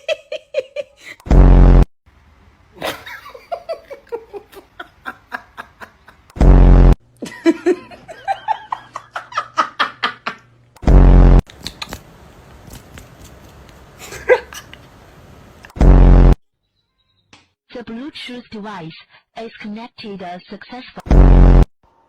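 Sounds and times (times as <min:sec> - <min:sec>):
person laughing and giggling: 0:00.0 - 0:01.3, 0:02.8 - 0:06.4, 0:07.2 - 0:10.5, 0:14.0 - 0:14.8
low buzzing blasts: 0:06.4 - 0:07.0.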